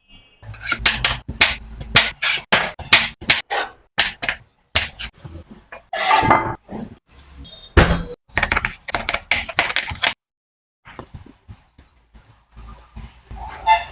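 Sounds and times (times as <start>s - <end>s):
knife chopping on cutting board: 4.0s - 5.1s.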